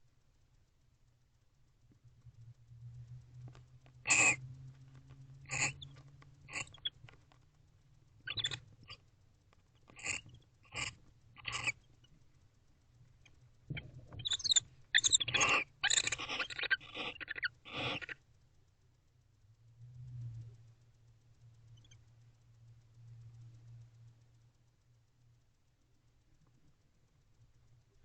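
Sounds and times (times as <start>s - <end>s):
owls twittering: 4.0s - 4.4s, 5.5s - 7.0s, 8.2s - 9.0s, 9.9s - 11.9s, 13.7s - 18.2s.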